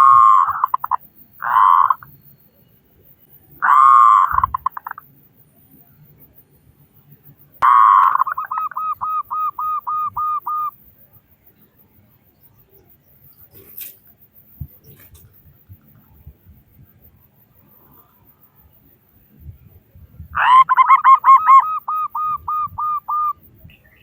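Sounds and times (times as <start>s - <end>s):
dove cooing: 0.0s - 2.1s, 3.6s - 5.0s, 7.6s - 10.7s, 20.4s - 23.4s.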